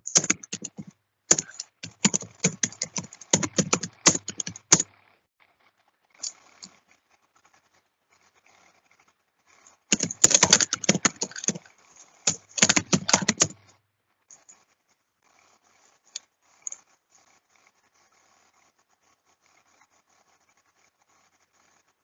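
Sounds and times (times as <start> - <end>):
typing on computer keyboard: 0.0 - 4.9, 9.9 - 13.7.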